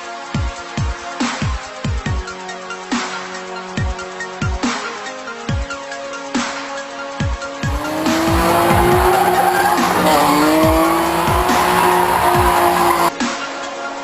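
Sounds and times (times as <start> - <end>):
car engines revving: 7.6 - 13.1
car tyres squealing: 7.6 - 13.1.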